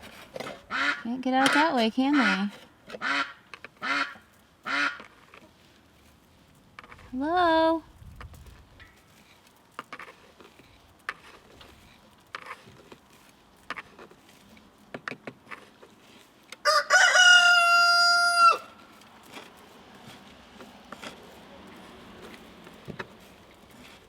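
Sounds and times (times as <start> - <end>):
rooster crowing: 16.6 - 18.8.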